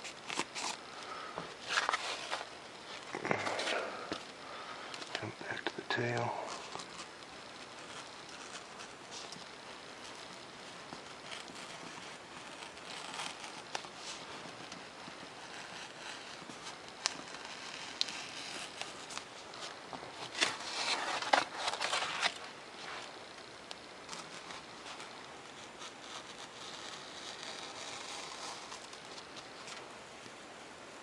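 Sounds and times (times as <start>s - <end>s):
knife blade scratching foam: 0.0s - 0.8s, 6.0s - 23.2s, 24.1s - 29.7s.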